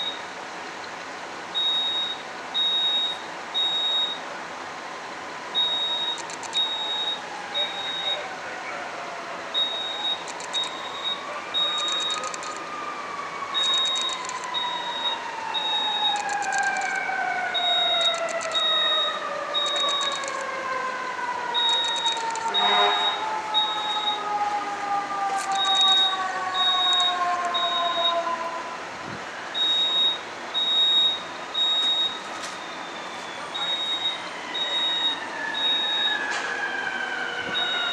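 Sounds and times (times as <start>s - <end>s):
fire truck siren: 0.0s - 0.6s, 1.5s - 37.9s
fire alarm beeping: 1.6s - 4.2s, 5.6s - 8.2s, 9.5s - 12.6s, 13.5s - 20.4s, 21.5s - 24.3s, 25.4s - 28.2s, 29.6s - 36.4s, 37.5s - 37.9s.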